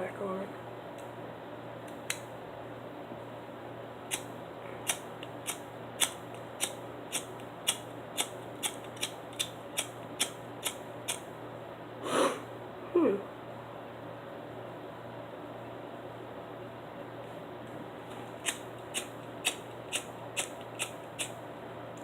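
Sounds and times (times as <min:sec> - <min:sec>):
short hiss: 0:12.0 - 0:12.4.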